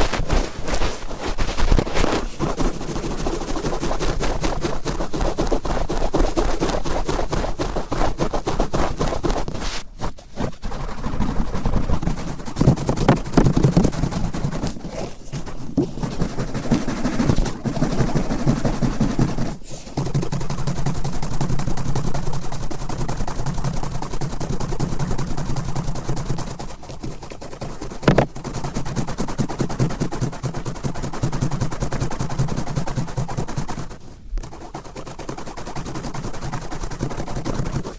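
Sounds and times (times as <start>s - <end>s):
cotton swab scratching in ear: 0.0s - 21.2s, 26.3s - 28.9s, 31.8s - 37.9s.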